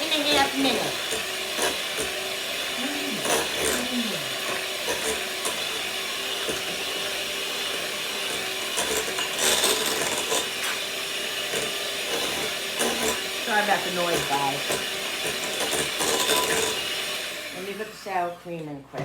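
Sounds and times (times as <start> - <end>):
electric mixer beating batter: 0.0 - 19.0.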